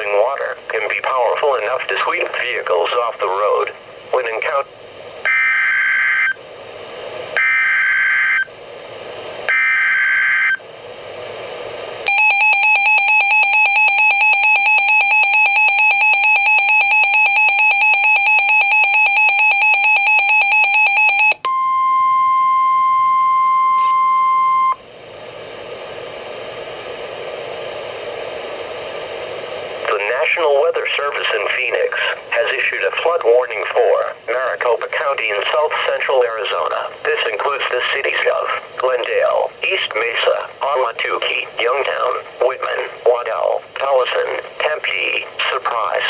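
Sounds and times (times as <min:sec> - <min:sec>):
radio hiss: 0:00.0 - 0:09.5, 0:25.2 - 0:46.0
pulsing electronic alarm beep: 0:07.4 - 0:08.5, 0:09.5 - 0:10.6, 0:12.1 - 0:24.8.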